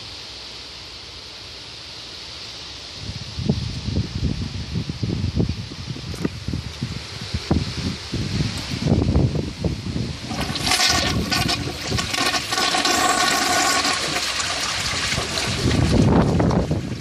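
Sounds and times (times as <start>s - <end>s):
toilet flushing: 10.2s - 17.0s.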